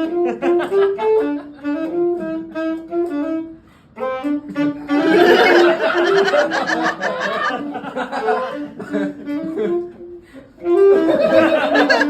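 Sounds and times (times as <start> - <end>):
saxophone melody: 0.0 - 12.0
audience laughter: 4.9 - 10.0, 10.9 - 12.0.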